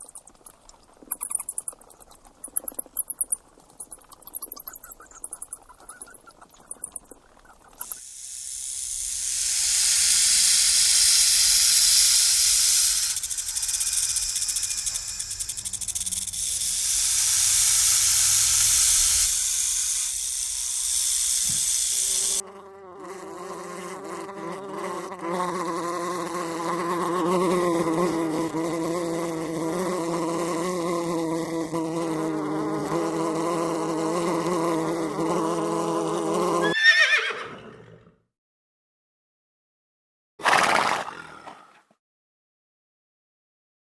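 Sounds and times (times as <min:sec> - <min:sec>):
loud hiss: 0:07.8 - 0:22.4
bee buzzing in flight: 0:07.8 - 0:36.7.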